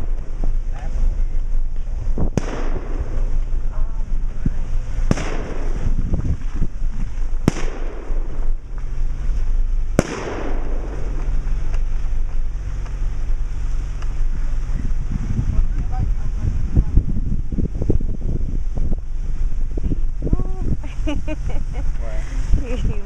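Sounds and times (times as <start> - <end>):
car engine hum: 0.0 - 23.0
sharp ringing bangs: 2.3 - 3.4, 5.0 - 6.0, 9.9 - 11.2.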